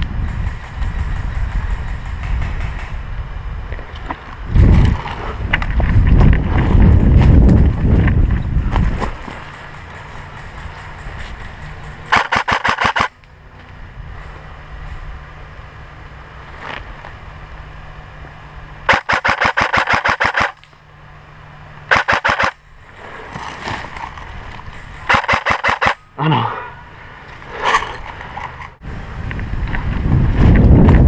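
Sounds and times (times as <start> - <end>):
airsoft gun firing full-auto bursts: 12.1 - 13.1, 18.9 - 20.6, 21.9 - 22.6, 25.1 - 26.0.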